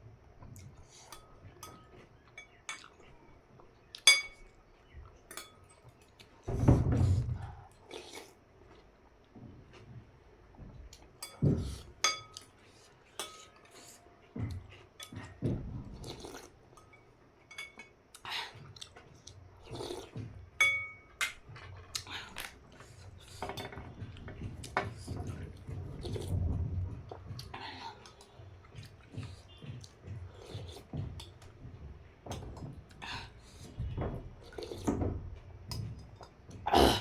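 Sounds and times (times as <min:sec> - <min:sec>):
utensils clinking against bowl: 0:01.0 - 0:03.2, 0:04.0 - 0:04.6, 0:05.3 - 0:06.1, 0:11.0 - 0:18.0, 0:19.8 - 0:26.2.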